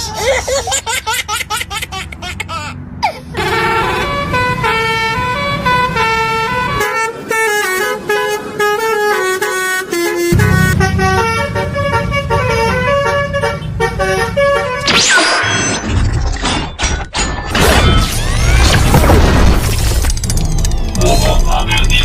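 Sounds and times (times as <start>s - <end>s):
bus horn playing a melody: 3.2s - 14.9s.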